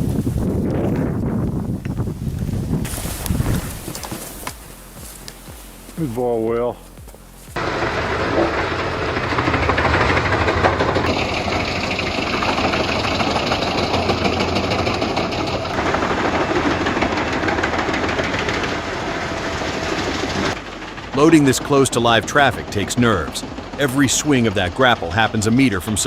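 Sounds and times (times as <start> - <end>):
heavy machinery engine running: 2.7 - 26.0.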